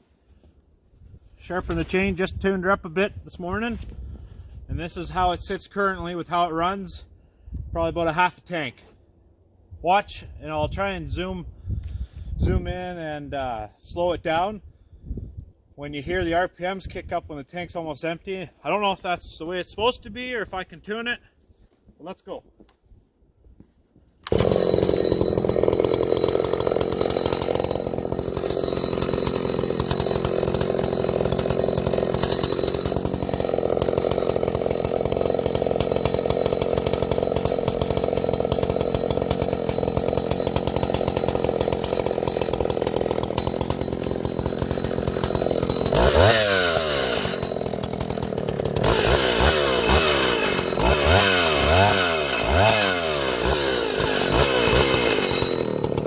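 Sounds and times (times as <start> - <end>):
chainsaw idling and revving: 24.2 - 56.0.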